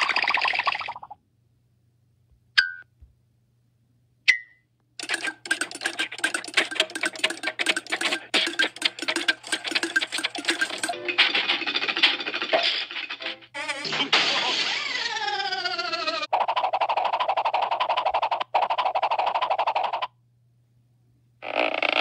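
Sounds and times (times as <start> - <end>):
fast clattering clicks: 5.0 - 13.6.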